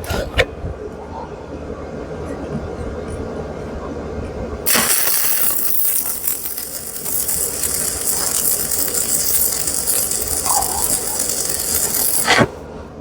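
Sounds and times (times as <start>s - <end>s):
welding arc crackle and hiss: 4.7s - 12.5s.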